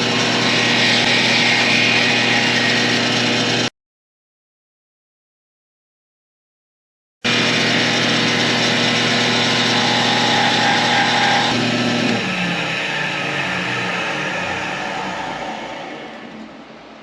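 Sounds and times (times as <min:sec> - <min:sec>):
power tool motor whining: 0:00.0 - 0:03.7, 0:07.3 - 0:16.3.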